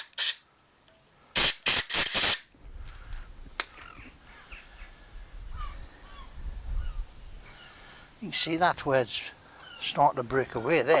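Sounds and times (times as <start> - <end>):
air blow gun hissing: 0.0 - 0.4, 1.4 - 2.4.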